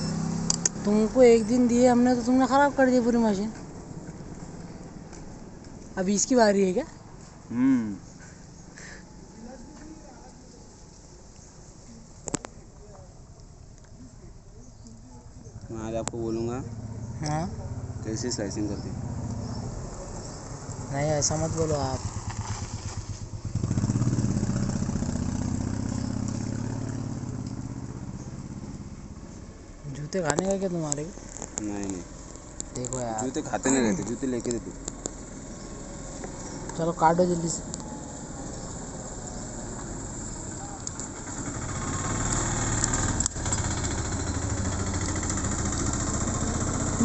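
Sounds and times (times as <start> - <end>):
small engine throbbing: 33.2 - 47.0.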